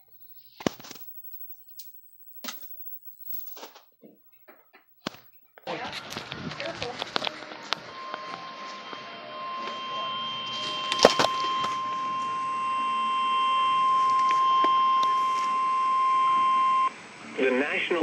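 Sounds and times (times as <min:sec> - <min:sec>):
steady high alarm tone: 0:05.7 - 0:17.0.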